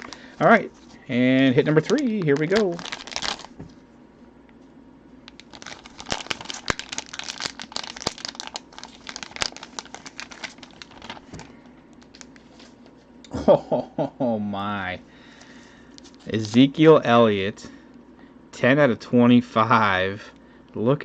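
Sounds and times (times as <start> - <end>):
plastic packaging crinkling: 0.0 - 0.4, 1.3 - 3.7, 5.3 - 12.8.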